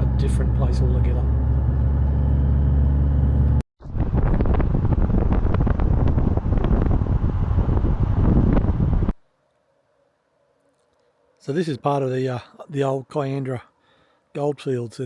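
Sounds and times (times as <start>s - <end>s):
vehicle driving drone inside cab: 0.0s - 9.2s
wind buffeting microphone: 3.8s - 9.2s.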